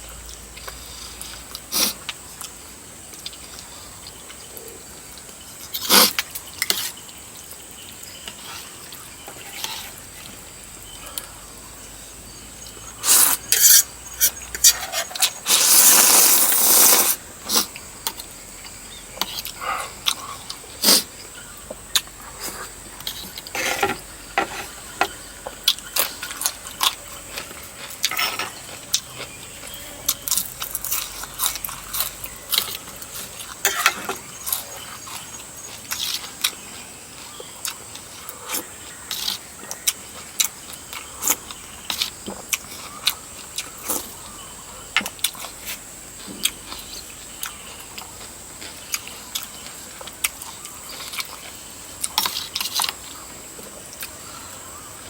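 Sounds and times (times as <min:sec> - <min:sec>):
chewing: 0:12.6 - 0:54.7.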